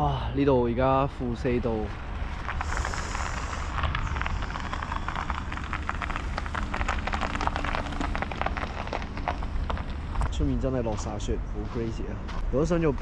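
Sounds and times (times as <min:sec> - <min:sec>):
wind rumbling on microphone: 0:00.6 - 0:13.0
dense crackle of small ticks: 0:02.1 - 0:10.7.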